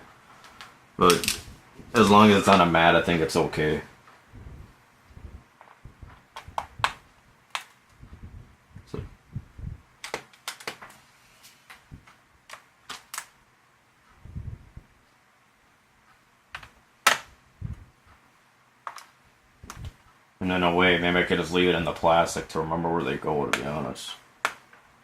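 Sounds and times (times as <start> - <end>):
hands handling plastic laptop parts: 5.6 - 8.0, 10.0 - 13.4, 18.8 - 20.0.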